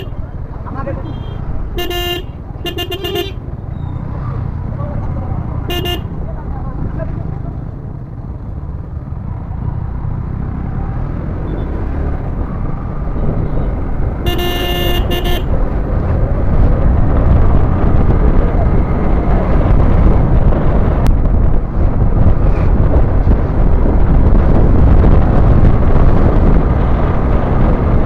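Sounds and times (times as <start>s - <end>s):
vehicle horn honking: 1.0s - 3.4s, 5.7s - 6.1s, 14.2s - 15.5s
wind on microphone: 12.0s - 28.0s.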